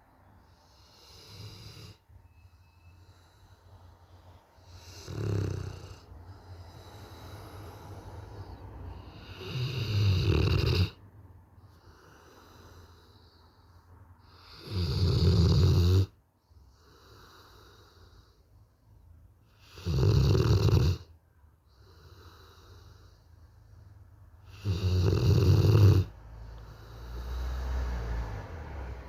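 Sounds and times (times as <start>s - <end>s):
dog snoring: 0.6s - 2.0s, 4.6s - 11.0s, 14.3s - 16.2s, 19.5s - 21.1s, 24.4s - 28.4s
dog breathing softly: 2.7s - 10.0s, 26.2s - 28.3s.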